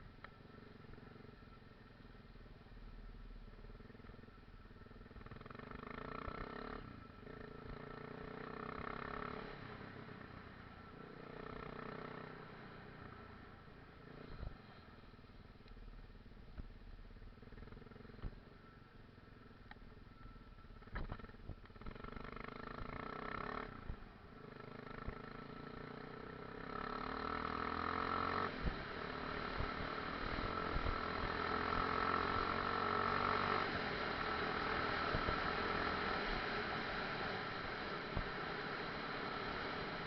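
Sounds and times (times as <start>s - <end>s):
motorcycle engine revving: 4.8s - 10.3s, 10.9s - 13.1s, 20.8s - 40.0s.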